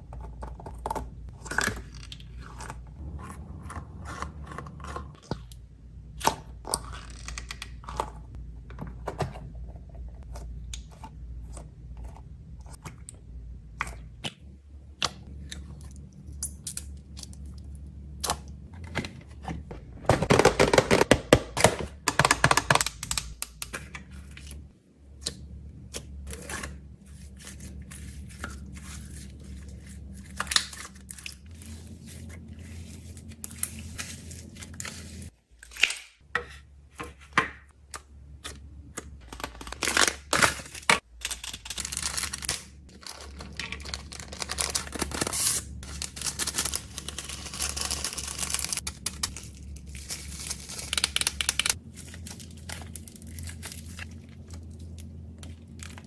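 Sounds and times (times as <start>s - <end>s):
packaging crinkling and tearing: 39.2s - 56.0s.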